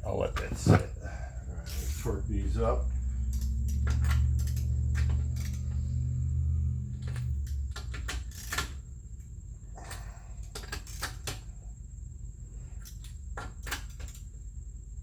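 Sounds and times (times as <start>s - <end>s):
socket wrench ratcheting: 3.3s - 6.2s, 7.0s - 8.9s, 10.4s - 11.5s.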